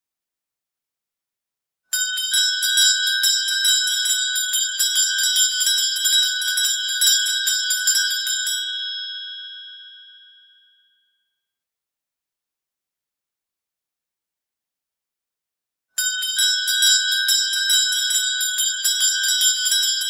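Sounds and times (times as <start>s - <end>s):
bell ringing rapidly: 16.0s - 20.0s.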